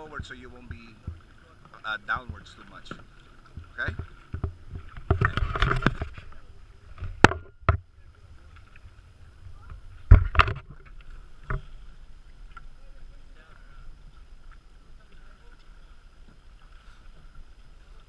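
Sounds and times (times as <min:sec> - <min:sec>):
paddle knocking against kayak: 0:00.0 - 0:07.9, 0:09.5 - 0:11.9
paddle strokes splashing: 0:00.0 - 0:18.0.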